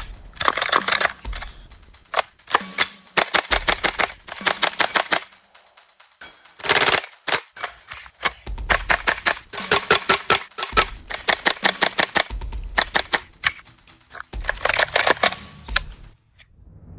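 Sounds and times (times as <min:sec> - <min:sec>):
airsoft rifle automatic bursts: 0:08.2 - 0:15.3.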